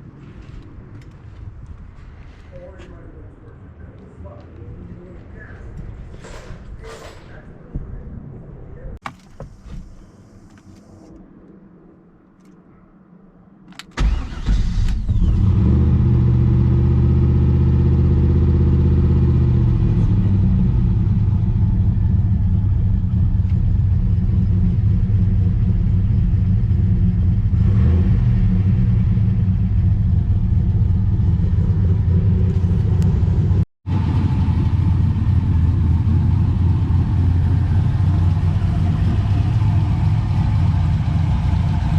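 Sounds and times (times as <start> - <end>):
car engine starting and idling: 13.7 - 41.9.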